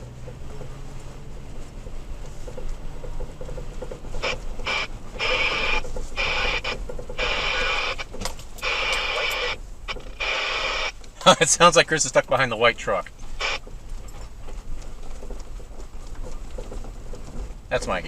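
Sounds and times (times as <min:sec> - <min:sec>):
truck rumble: 0:00.0 - 0:18.0
garbled radio transmission with static: 0:03.9 - 0:13.7.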